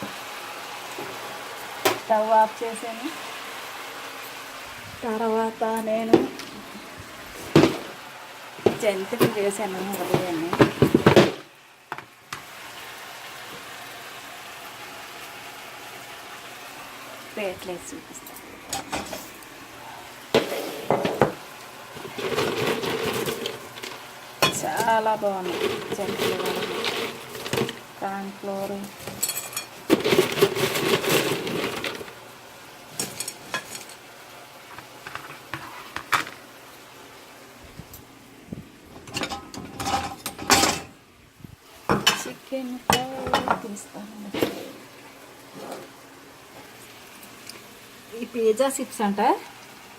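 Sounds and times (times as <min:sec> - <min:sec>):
rattling crinkling clatter: 0:22.0 - 0:27.9, 0:29.0 - 0:32.2.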